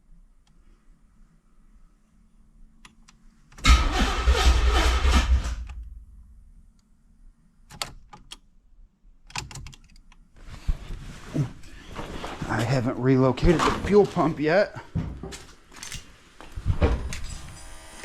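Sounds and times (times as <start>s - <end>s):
engine cranking on starter: 3.6s - 5.9s.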